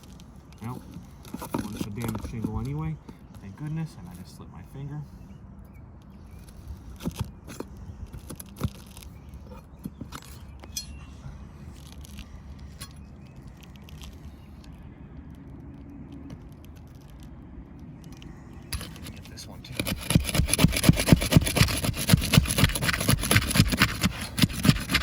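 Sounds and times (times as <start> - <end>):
metal bar prying nails: 18.8 - 25.0.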